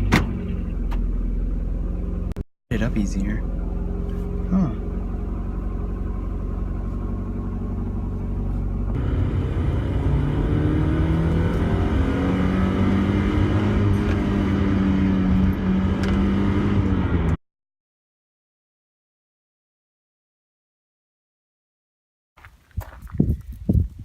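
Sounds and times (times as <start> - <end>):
car engine idling and accelerating: 0.0 - 17.4.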